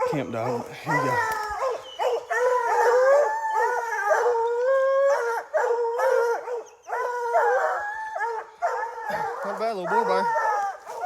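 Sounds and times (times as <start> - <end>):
dogs barking: 0.0 - 11.0
dogs howling: 0.0 - 11.0.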